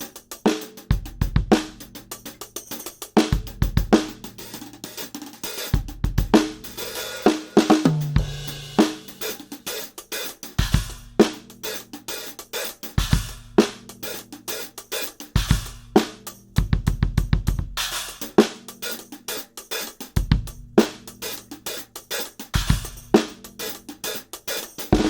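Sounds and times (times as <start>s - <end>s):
hi-hat: 0.0s - 16.9s, 17.8s - 25.0s
snare drum: 0.0s - 25.0s
cymbals: 1.5s - 16.6s
kick drum: 16.6s - 17.8s, 20.2s - 20.6s.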